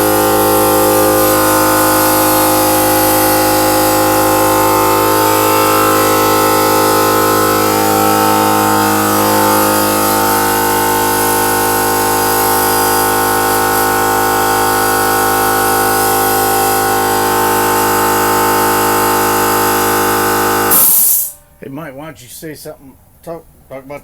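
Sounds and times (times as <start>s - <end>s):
air compressor humming: 0.0s - 23.8s.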